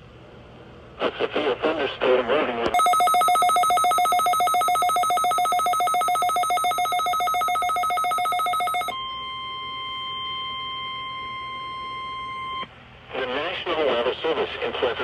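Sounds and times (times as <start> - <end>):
pulsing electronic alarm: 2.8 - 12.6
steady warning tone: 2.8 - 12.7.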